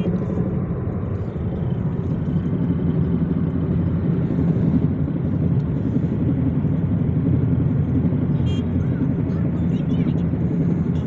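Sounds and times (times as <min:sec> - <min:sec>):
car engine running: 0:00.0 - 0:11.0
engine knocking: 0:00.0 - 0:11.0.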